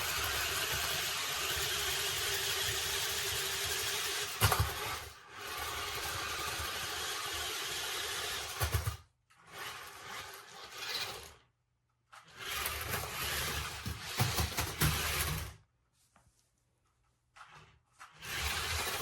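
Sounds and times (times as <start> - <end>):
toy car motors whirring: 0.0 - 11.5, 12.1 - 15.6, 18.0 - 19.0.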